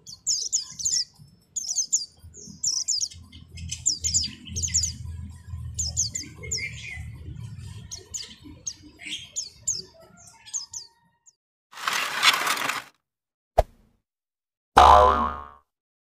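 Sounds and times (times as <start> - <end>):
birds chirping: 0.0 - 11.3.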